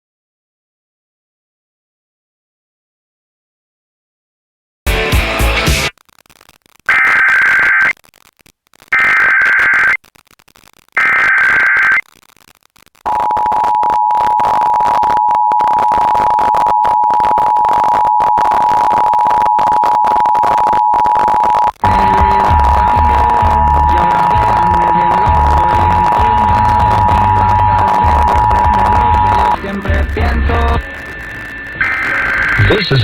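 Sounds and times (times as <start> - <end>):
broadcast audio: 4.9 - 33.0
warbling data bursts: 5.2 - 33.0
two-tone attention signal: 13.1 - 29.6.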